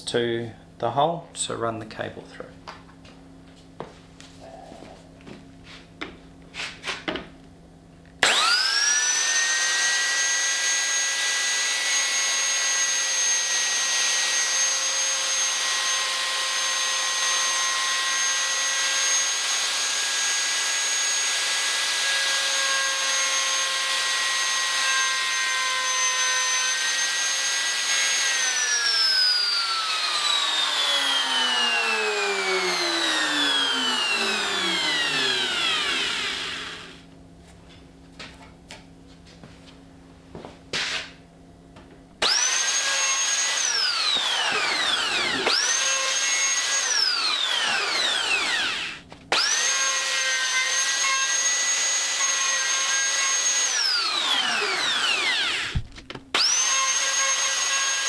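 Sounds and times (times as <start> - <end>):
electric router whining: 8.2 - 37.1, 42.2 - 58.0.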